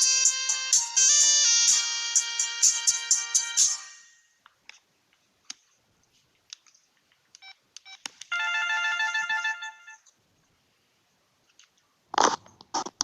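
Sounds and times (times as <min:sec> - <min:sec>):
electronic ringtone tune: 0:00.0 - 0:04.2, 0:08.3 - 0:10.0.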